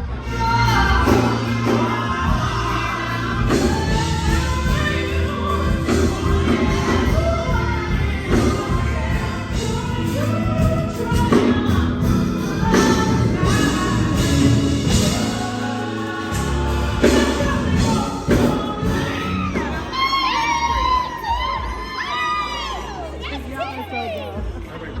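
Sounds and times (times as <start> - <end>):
gospel choir singing: 0.0 - 23.4
heavy bass: 0.0 - 23.7
children shouting: 19.2 - 24.4.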